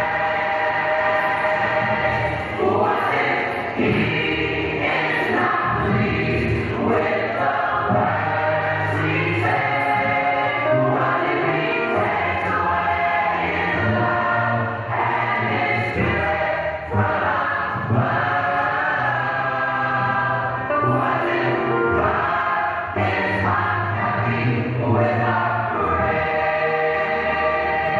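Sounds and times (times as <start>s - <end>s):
gospel choir singing: 0.0s - 27.9s
musical accompaniment: 0.0s - 27.9s.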